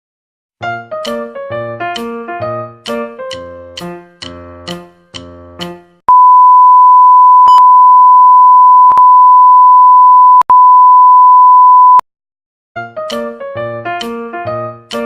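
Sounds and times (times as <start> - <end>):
censor bleep tone: 6.1 - 12.0.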